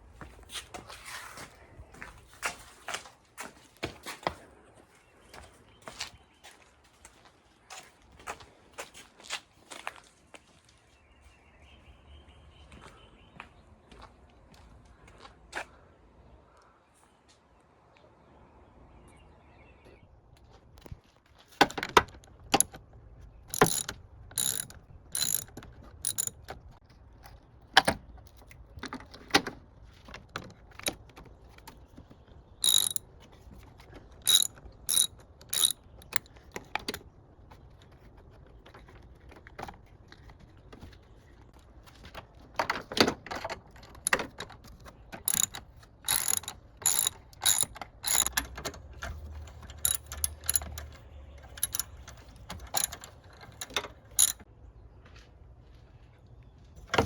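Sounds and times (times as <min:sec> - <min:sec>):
ratchet wrench clicking: 0:23.5 - 0:26.4, 0:32.6 - 0:33.0, 0:34.3 - 0:36.3, 0:45.3 - 0:48.5, 0:49.7 - 0:50.9, 0:51.6 - 0:52.0, 0:52.7 - 0:53.0, 0:53.6 - 0:54.4.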